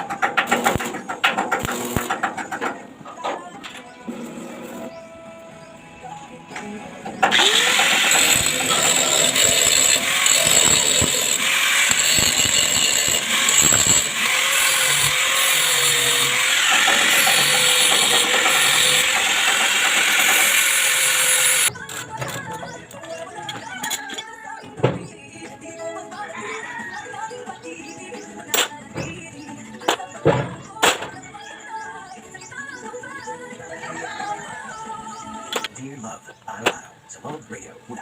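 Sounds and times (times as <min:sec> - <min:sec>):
harsh metalworking noise: 0:00.0 - 0:03.3, 0:07.1 - 0:24.3.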